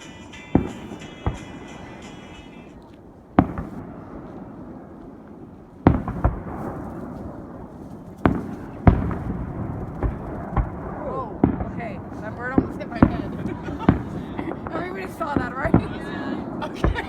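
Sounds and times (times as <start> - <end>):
fireworks shells bursting: 0.0 - 2.8, 5.9 - 17.0.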